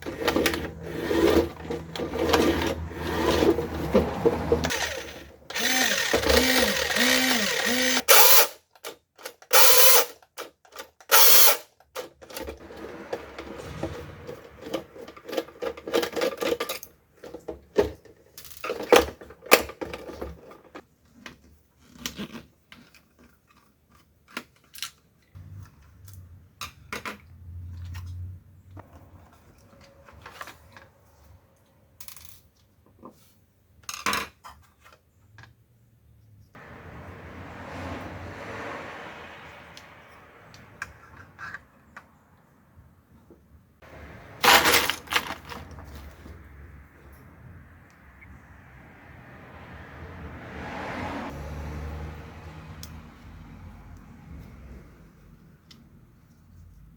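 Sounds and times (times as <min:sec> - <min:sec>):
toy car motor whirring: 0:00.0 - 0:10.3, 0:11.0 - 0:11.7
plastic parts clicking: 0:43.9 - 0:46.3.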